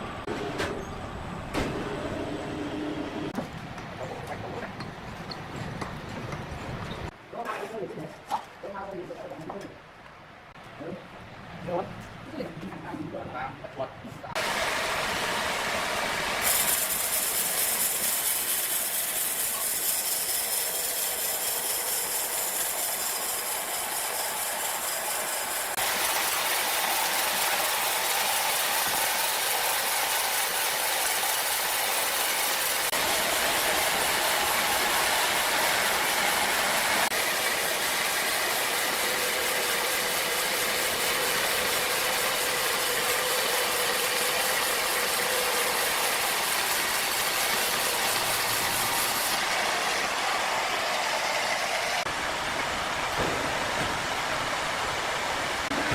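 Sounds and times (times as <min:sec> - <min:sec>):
sawmill machinery running: 0:14.4 - 0:55.9.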